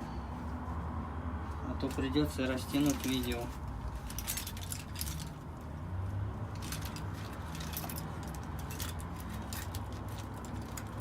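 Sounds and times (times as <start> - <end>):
metal tools clicking and rattling: 2.6 - 5.6, 6.5 - 11.0.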